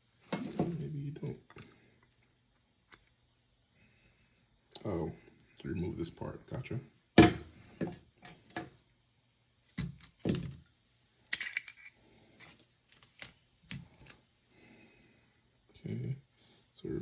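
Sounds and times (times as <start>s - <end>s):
metallic clink: 11.3s - 12.0s.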